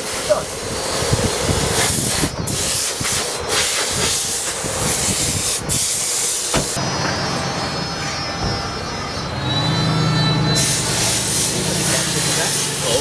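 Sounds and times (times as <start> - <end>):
high-pressure water spray hissing: 0.0 - 6.8, 9.6 - 13.0.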